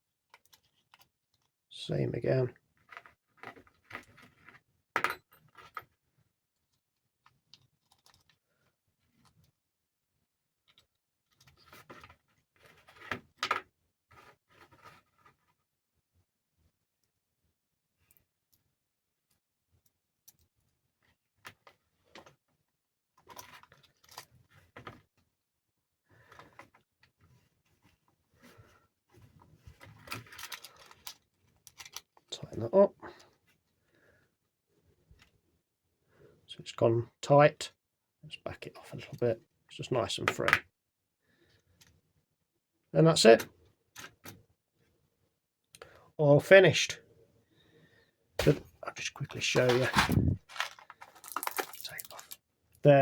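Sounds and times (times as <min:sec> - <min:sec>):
small parts clicking and tapping: 0:00.2 - 0:01.6, 0:06.6 - 0:08.4, 0:18.1 - 0:20.8, 0:30.0 - 0:32.3, 0:49.5 - 0:52.5.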